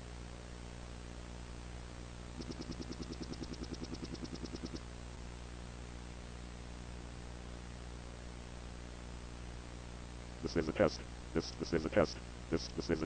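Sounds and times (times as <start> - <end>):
tape hiss with low hum: 0.0 - 13.0
rapid pulsing ticks: 2.4 - 4.8.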